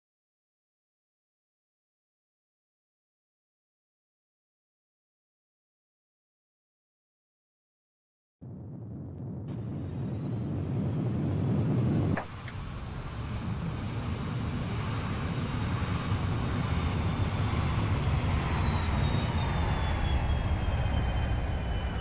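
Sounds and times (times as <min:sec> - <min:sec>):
jet engines roaring: 0:08.4 - 0:22.0.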